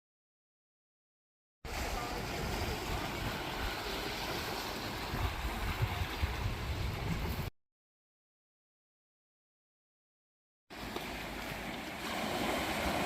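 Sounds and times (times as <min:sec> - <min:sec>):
sea water rushing: 0:01.7 - 0:07.5, 0:10.7 - 0:13.0
wind buffeting microphone: 0:01.7 - 0:07.5.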